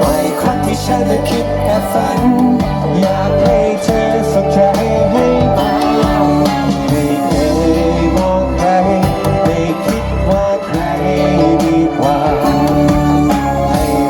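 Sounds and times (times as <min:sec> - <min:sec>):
man singing: 0:00.0 - 0:14.0
pop song with guitar and drums: 0:00.0 - 0:14.0.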